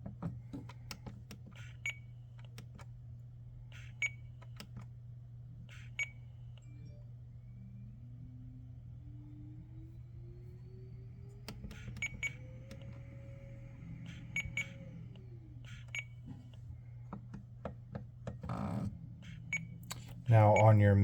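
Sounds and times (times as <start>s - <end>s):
steady low hum: 0.0s - 21.0s
electronic beeps: 20.3s - 20.9s.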